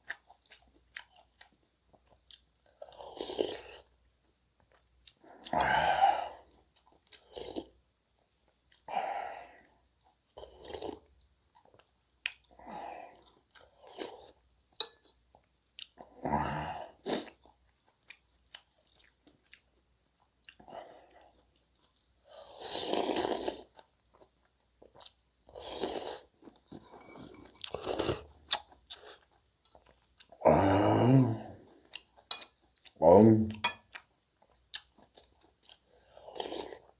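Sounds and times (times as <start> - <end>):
person chewing food: 0.0 - 16.2, 16.8 - 36.9.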